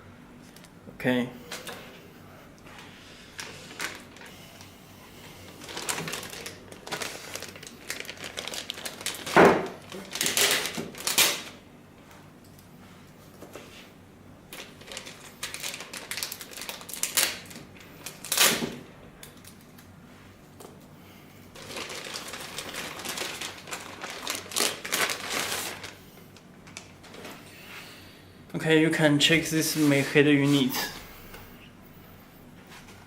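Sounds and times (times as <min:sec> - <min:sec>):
packaging rustling: 0:02.8 - 0:04.6, 0:05.5 - 0:11.6, 0:14.5 - 0:19.6, 0:21.5 - 0:27.4.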